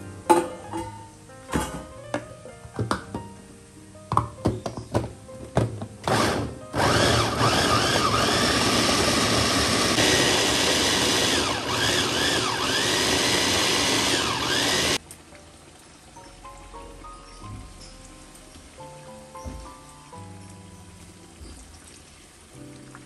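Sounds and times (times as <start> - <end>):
small electric motor running: 6.1 - 15.0.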